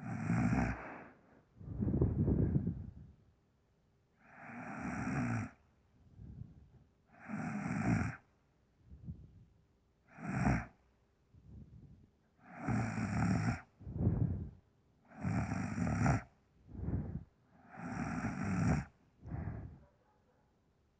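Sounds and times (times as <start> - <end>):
woman snoring heavily: 0.0 - 1.2, 4.3 - 5.6, 7.2 - 8.2, 12.5 - 14.5, 15.2 - 16.3, 16.9 - 19.8
quiet breaths: 0.0 - 20.9.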